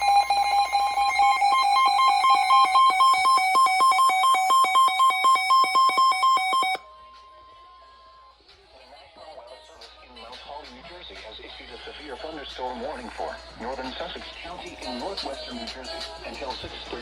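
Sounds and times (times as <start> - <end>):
buzzy two-pitch alarm warble: 0.0 - 6.8.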